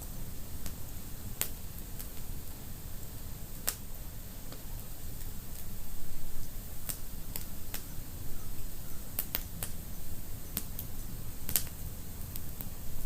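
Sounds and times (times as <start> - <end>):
low rumble of flames: 0.0 - 13.0
wood fire crackling and popping: 0.2 - 13.0.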